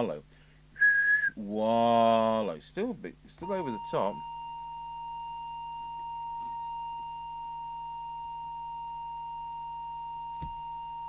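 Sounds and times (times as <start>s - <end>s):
steady test tone: 3.4s - 11.0s.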